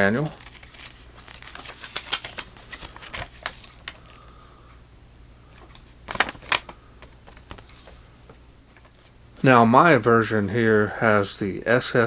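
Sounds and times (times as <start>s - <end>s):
paper and packaging rustling: 0.0s - 4.4s, 5.5s - 9.2s.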